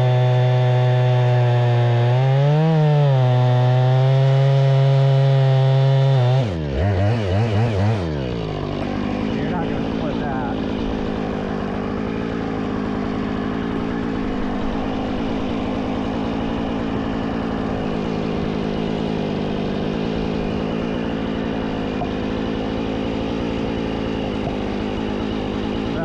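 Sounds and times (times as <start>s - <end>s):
chainsaw running at high revs: 0.0s - 26.0s.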